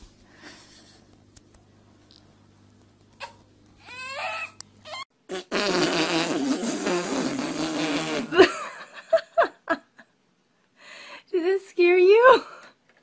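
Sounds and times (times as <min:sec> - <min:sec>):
long wavering fart: 0:05.3 - 0:08.5.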